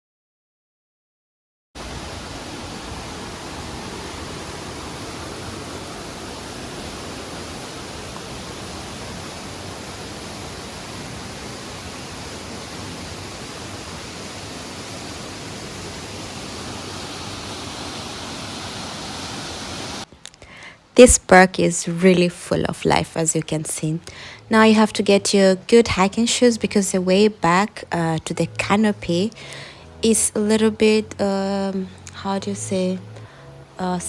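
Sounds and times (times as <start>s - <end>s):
waterfall pouring: 1.8s - 20.1s.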